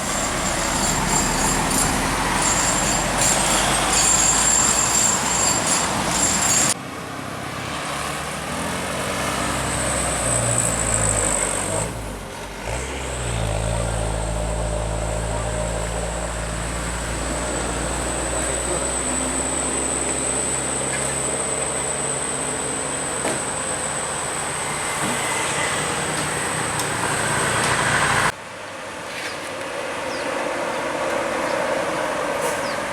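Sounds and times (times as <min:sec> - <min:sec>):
road traffic noise: 0:00.0 - 0:32.9
bus engine running: 0:08.2 - 0:28.3.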